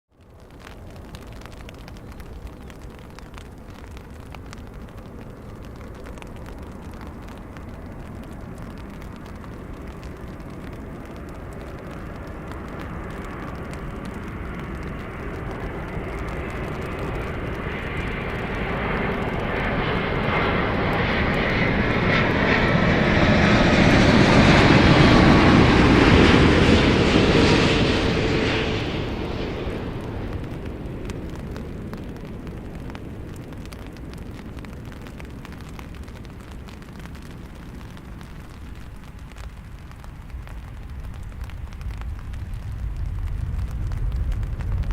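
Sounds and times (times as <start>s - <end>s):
jet engines whining: 15.6s - 33.4s.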